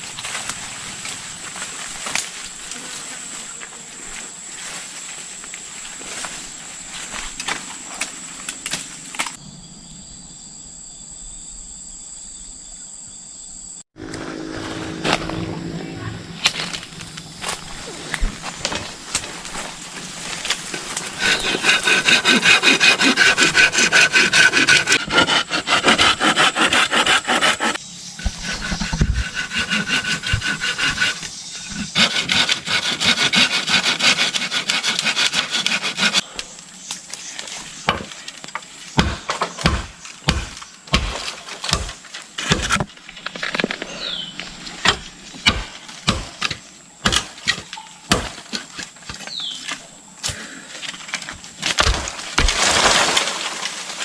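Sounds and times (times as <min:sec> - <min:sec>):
hand saw cutting bamboo: 0:20.6 - 0:36.3.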